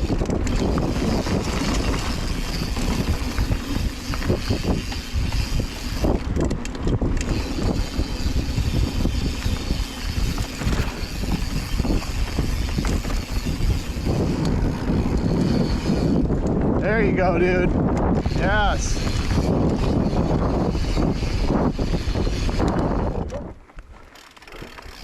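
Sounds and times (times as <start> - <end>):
bike rattling over bumps: 0.0 - 25.0
bike tyres rolling on dirt: 0.0 - 25.0
wind buffeting microphone: 0.0 - 25.0.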